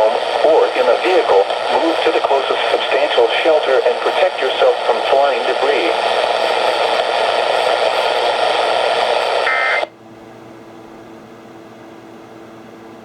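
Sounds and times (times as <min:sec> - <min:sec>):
radio receiver hiss: 0:00.0 - 0:09.9
faint steady hum: 0:00.0 - 0:13.0.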